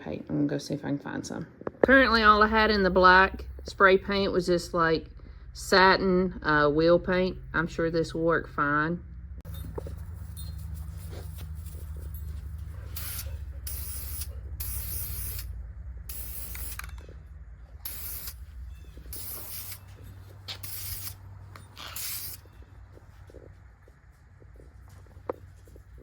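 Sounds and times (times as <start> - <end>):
spray paint can hissing: 12.8 - 15.5, 16.1 - 17.0, 17.8 - 22.5.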